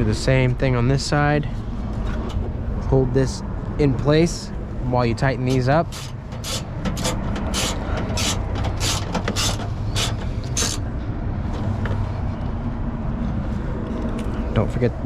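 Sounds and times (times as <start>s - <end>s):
hand ratchet clicking: 5.9s - 10.8s.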